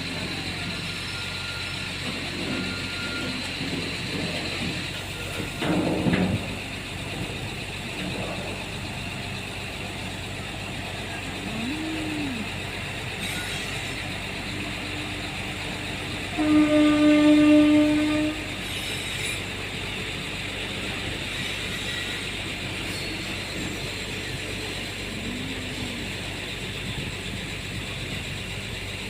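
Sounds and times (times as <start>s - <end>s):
freight train running: 0.0s - 29.0s
locomotive air horn blast: 16.2s - 18.7s.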